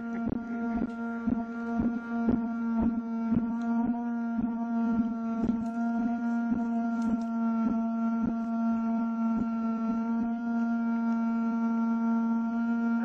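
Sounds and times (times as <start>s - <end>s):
electric fan humming: 0.0s - 13.0s.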